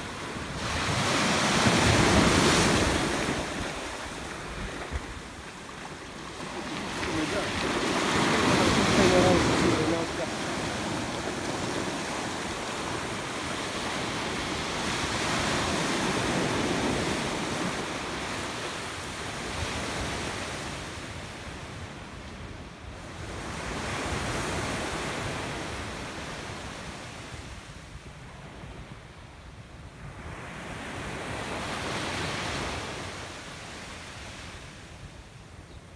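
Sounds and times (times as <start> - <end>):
sea waves washing in: 0.0 - 21.0.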